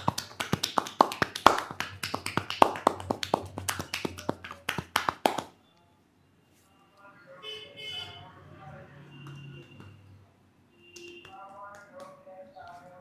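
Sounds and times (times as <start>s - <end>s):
hands tapping and slapping: 0.0s - 5.6s, 11.0s - 12.9s.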